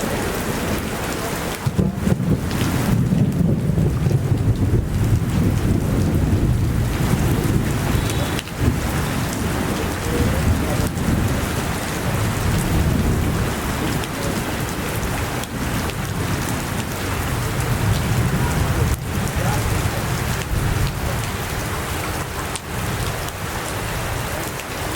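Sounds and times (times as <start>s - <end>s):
heavy rain rushing: 0.0s - 24.9s
deep rumble: 1.7s - 11.6s.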